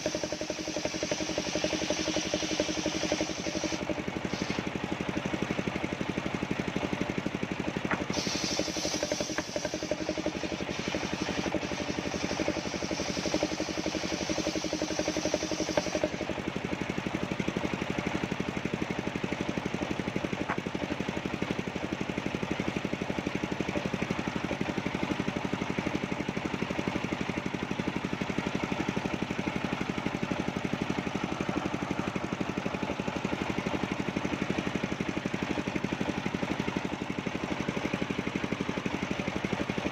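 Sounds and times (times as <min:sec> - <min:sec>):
high hiss: 0:00.0 - 0:04.7, 0:08.0 - 0:16.2
sawmill engine chugging: 0:00.0 - 0:39.9.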